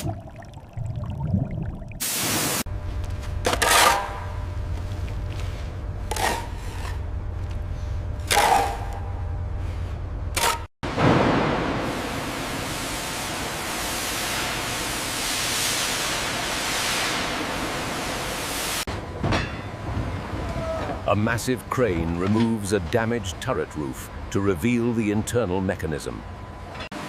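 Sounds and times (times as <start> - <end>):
steady low hum: 0.0 - 10.7, 18.9 - 26.9.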